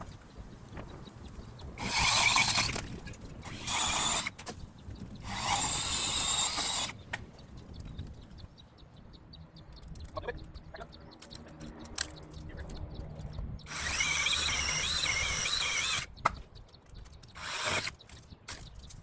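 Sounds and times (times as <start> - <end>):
electric saw cutting branches: 1.8 - 4.4, 5.2 - 7.0, 13.7 - 16.1, 17.3 - 18.0.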